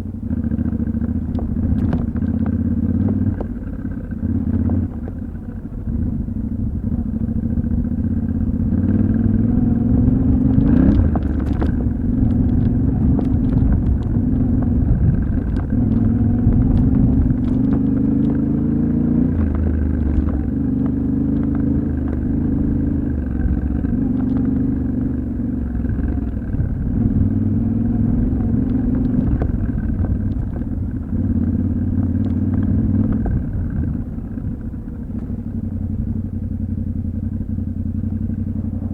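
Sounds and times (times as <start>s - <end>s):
motorcycle engine running: 0.0s - 38.9s
sharp clicks and knocks: 10.3s - 22.4s.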